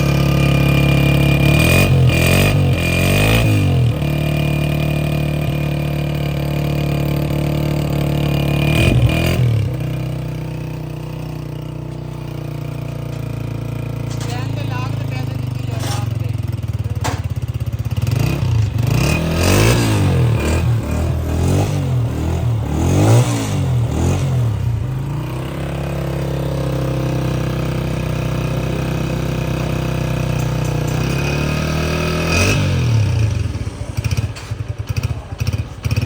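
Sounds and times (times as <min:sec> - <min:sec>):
motorcycle engine revving and idling: 0:00.0 - 0:36.0.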